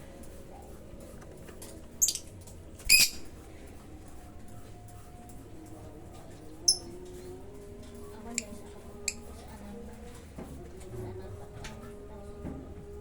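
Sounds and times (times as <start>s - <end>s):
lovebird chirping: 2.0s - 2.3s, 2.9s - 3.2s.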